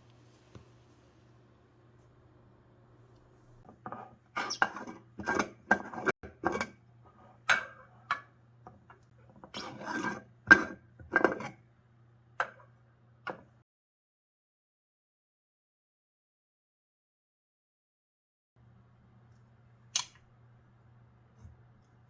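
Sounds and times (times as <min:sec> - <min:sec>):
utensils scraping dishes: 0:03.6 - 0:08.3, 0:09.4 - 0:11.6.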